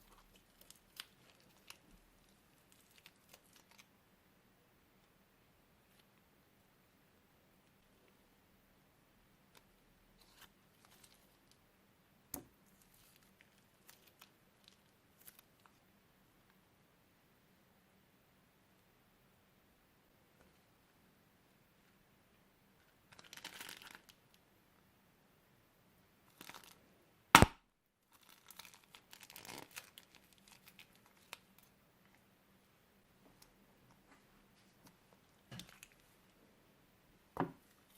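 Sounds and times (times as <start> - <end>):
faint clicks and crinkles: 0.0 - 3.9, 9.5 - 11.6, 12.4 - 16.6, 22.8 - 24.4, 28.0 - 32.3, 33.2 - 36.4
plastic crinkling: 0.0 - 3.9, 23.1 - 24.2, 26.3 - 26.8, 28.1 - 32.2, 35.4 - 36.2
plastic packaging tearing: 28.1 - 31.5.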